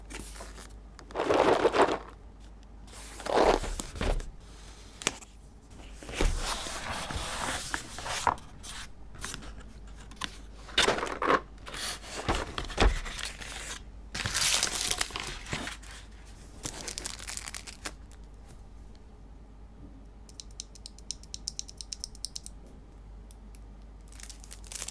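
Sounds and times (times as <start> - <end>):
packaging tearing and crinkling: 10.8 - 18.1, 24.1 - 24.9.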